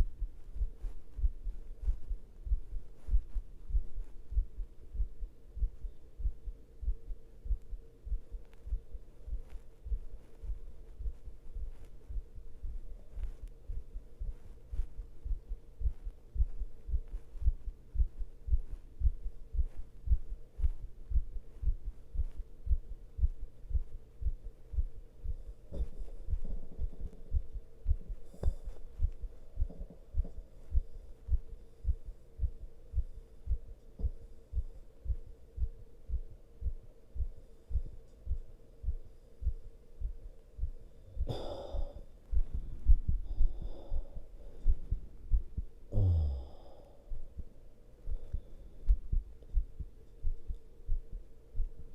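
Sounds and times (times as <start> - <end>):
heartbeat thuds: 0.0 - 51.9
heavy breathing: 41.1 - 49.0.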